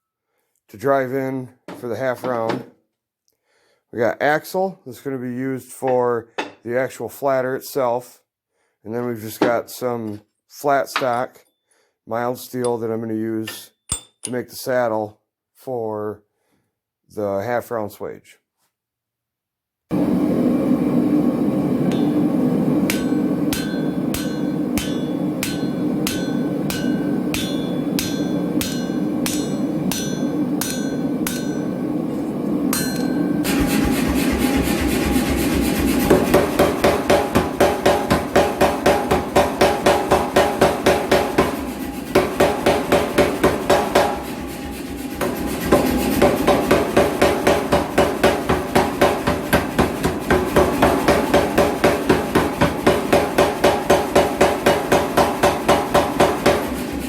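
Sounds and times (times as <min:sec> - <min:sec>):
hammer ringing on anvil: 0:13.5 - 0:14.4, 0:21.9 - 0:32.1, 0:32.7 - 0:34.6, 0:36.1 - 0:56.7
steady hum: 0:19.9 - 0:57.0
power hammer pounding: 0:21.9 - 0:32.0, 0:32.7 - 0:57.0.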